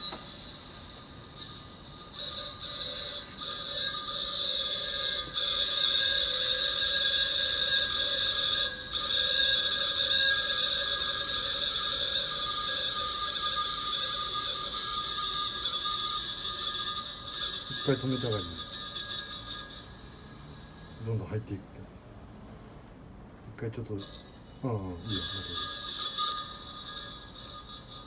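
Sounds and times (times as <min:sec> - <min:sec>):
refrigerant gas hissing: 0:00.0 - 0:11.4
steady hum: 0:00.0 - 0:28.0.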